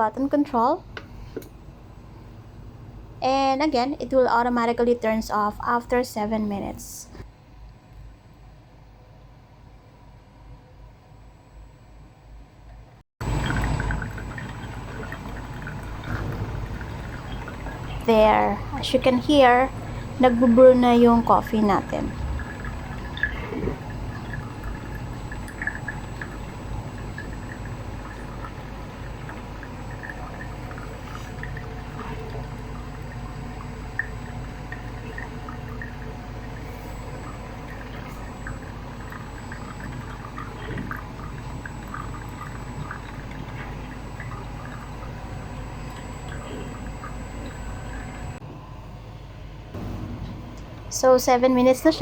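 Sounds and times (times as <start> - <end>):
water trickling and dripping: 13.2 - 48.4.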